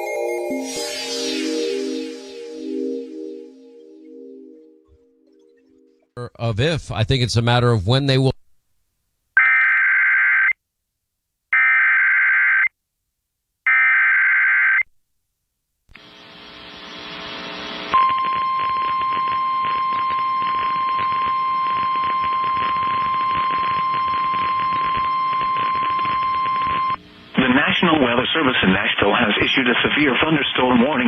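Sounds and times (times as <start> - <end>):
warbling data bursts: 0.5 - 6.1.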